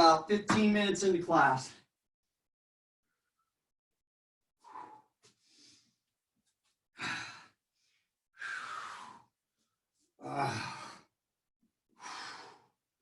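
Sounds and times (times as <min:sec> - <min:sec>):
person breathing hard: 0:04.6 - 0:06.0, 0:07.0 - 0:09.4, 0:12.0 - 0:12.8.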